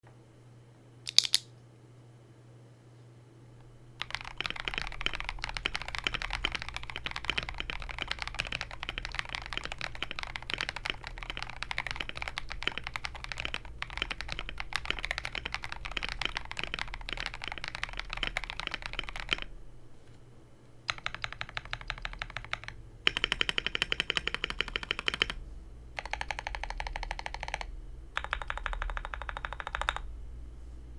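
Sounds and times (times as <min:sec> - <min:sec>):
mechanical keyboard typing: 0:01.1 - 0:01.4, 0:04.0 - 0:19.5, 0:20.9 - 0:25.4, 0:26.0 - 0:30.0
rapid key presses: 0:01.1 - 0:01.4, 0:04.0 - 0:19.5, 0:20.9 - 0:25.4, 0:26.0 - 0:30.0.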